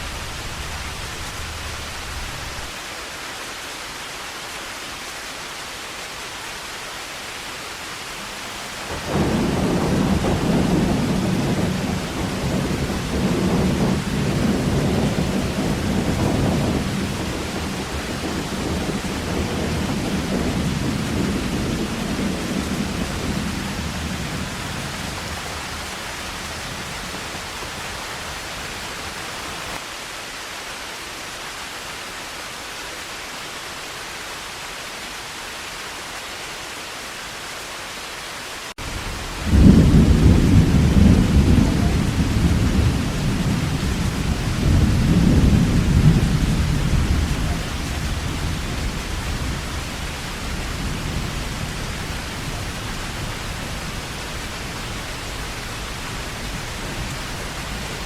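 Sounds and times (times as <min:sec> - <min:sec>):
thunder rumbling: 0:00.0 - 0:02.7, 0:08.8 - 0:29.8, 0:38.8 - 0:58.0
heavy rain: 0:00.0 - 0:58.0.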